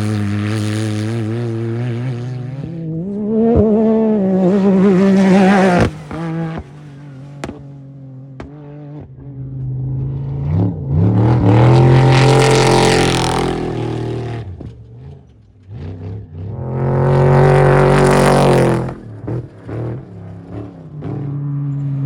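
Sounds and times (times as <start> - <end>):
off-road vehicles revving past: 0.0 - 22.0.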